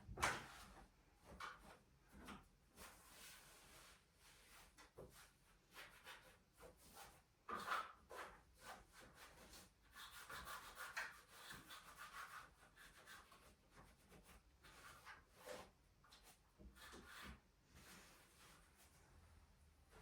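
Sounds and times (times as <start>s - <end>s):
faint rubbing and rustling: 11.6s - 20.0s.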